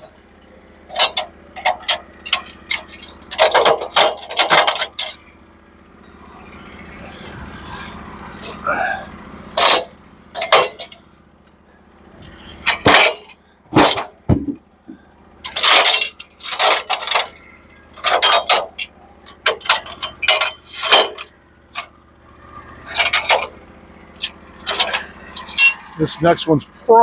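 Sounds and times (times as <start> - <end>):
low engine hum: 0.0 - 27.0
metal clanks and knocks: 0.8 - 5.4, 9.5 - 11.6, 12.2 - 26.1.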